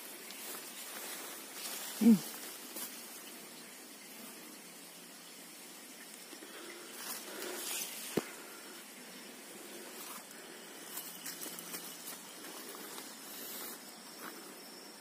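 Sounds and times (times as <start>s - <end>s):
rustling and scuffing: 0.0s - 3.0s, 10.0s - 14.5s.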